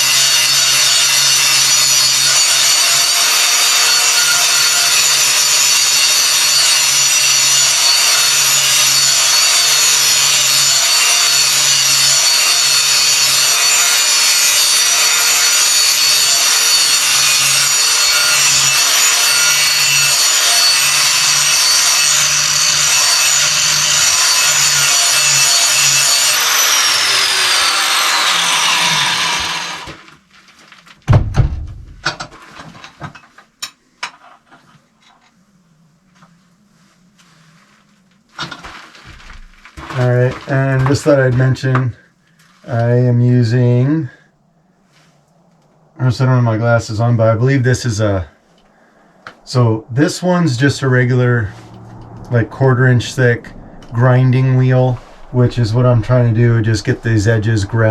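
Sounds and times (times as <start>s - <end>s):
grinder winding down: 0.0s - 30.0s, 49.2s - 57.9s
angle grinder grinding steel: 0.0s - 30.1s, 49.3s - 57.9s.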